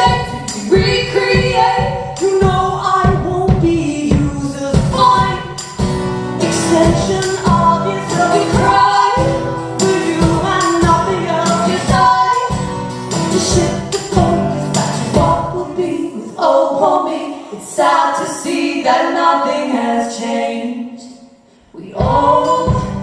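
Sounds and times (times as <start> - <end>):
live band music: 0.0 - 16.0
strummed rhythm: 0.0 - 16.0.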